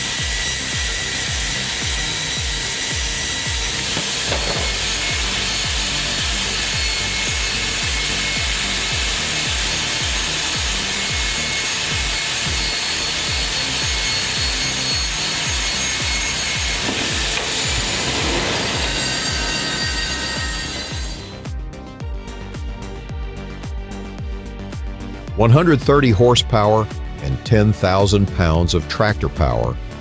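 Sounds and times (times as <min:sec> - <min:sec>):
woodworking machine cutting wood: 0:00.0 - 0:21.5
music with bass beat: 0:00.0 - 0:30.0.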